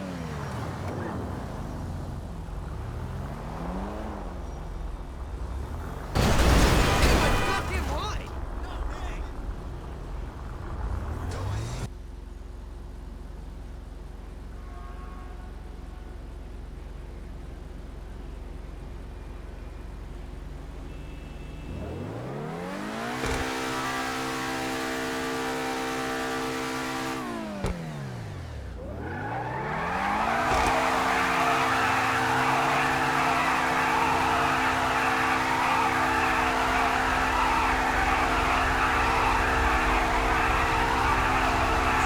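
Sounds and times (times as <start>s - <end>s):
car engine revving: 0.0s - 11.9s, 21.6s - 42.0s.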